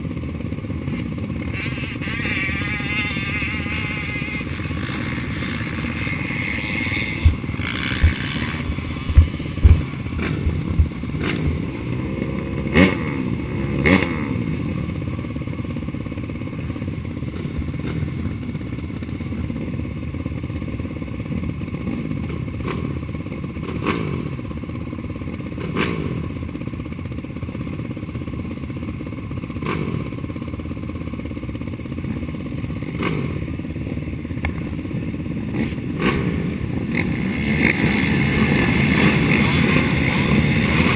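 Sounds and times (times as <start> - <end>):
atv engine revving: 0.0 - 24.9, 25.5 - 27.4, 28.8 - 31.3, 31.9 - 40.9
thumps and clatter over bumps: 7.2 - 11.6.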